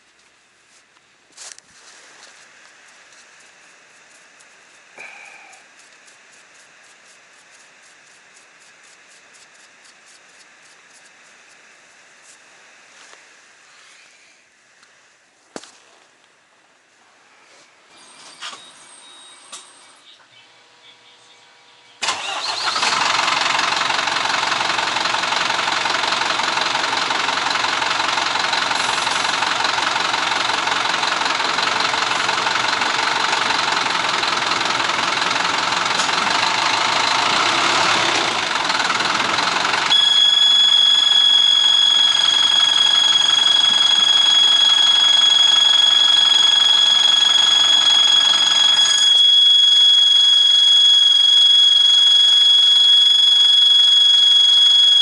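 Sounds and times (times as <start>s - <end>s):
engine running: 0.0s - 55.0s
electronic warning tone: 35.3s - 55.0s.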